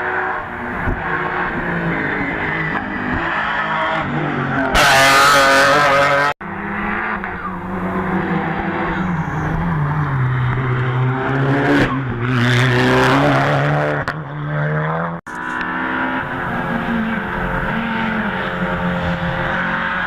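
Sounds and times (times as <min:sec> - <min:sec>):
race car engine running hard: 0:15.3 - 0:20.0.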